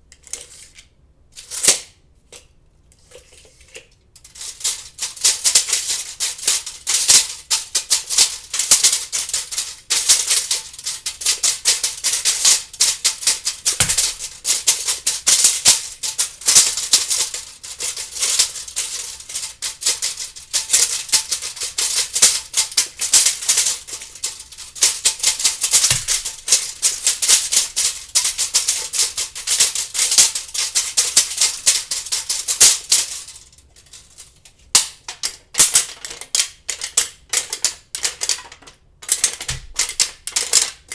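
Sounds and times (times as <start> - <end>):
tape measure rapid clicking: 4.6 - 33.4, 39.1 - 40.7.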